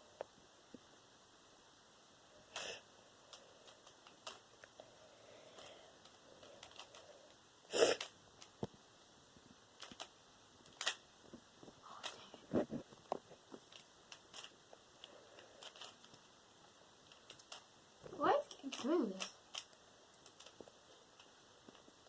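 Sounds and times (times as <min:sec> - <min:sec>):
puzzle cube plastic clicks: 0:03.3 - 0:04.8, 0:05.5 - 0:07.1, 0:09.8 - 0:11.0, 0:13.1 - 0:16.2, 0:17.0 - 0:17.7, 0:18.4 - 0:21.9
puzzle cube rasps: 0:05.6 - 0:07.1, 0:07.7 - 0:08.6, 0:09.8 - 0:11.0, 0:13.6 - 0:16.1, 0:17.0 - 0:17.7.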